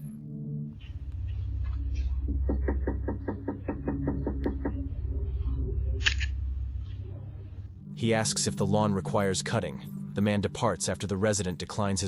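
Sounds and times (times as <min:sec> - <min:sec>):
low rumble: 0:00.8 - 0:10.2
knocking on a door: 0:02.3 - 0:04.8.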